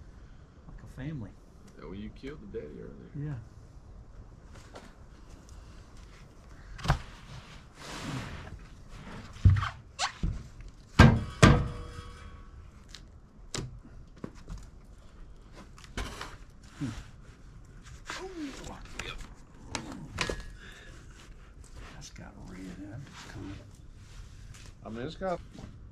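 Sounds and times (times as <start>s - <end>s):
lumber scraping: 5.5s - 11.0s, 15.0s - 25.7s
heavy wooden thunks and knocks: 10.2s - 11.9s.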